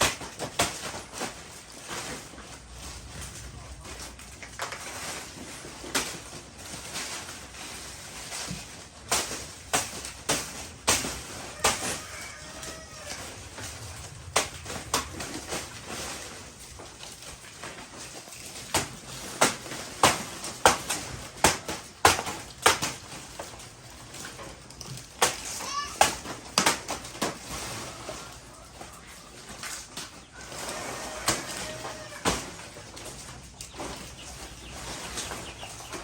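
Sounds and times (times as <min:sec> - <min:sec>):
blade chopping into wood: 0:18.7 - 0:23.0.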